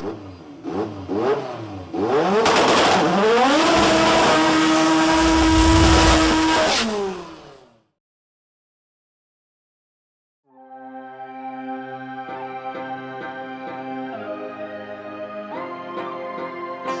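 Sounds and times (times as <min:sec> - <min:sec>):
drag car engine revving: 0:00.0 - 0:07.6.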